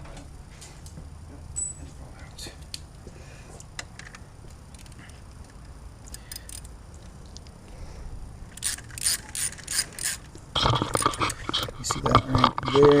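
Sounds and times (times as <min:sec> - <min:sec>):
ratchet wrench clicking: 0:03.8 - 0:06.7, 0:08.5 - 0:11.7.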